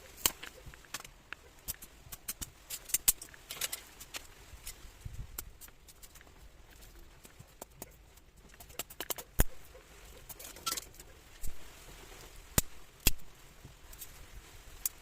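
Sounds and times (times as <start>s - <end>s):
dry twigs snapping: 0.0s - 15.0s.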